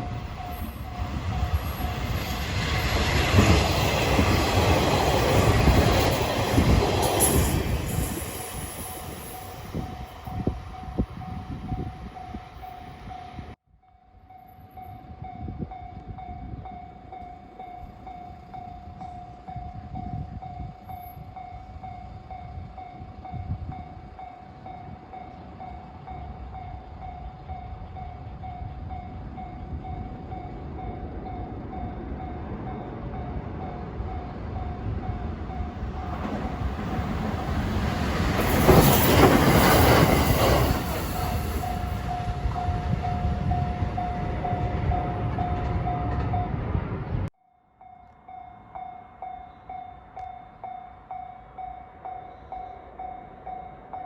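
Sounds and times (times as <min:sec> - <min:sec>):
electric train approaching: 0:00.0 - 0:54.0
rumble of passing trains: 0:00.0 - 0:54.0
level crossing warning bell ringing: 0:03.8 - 0:46.6.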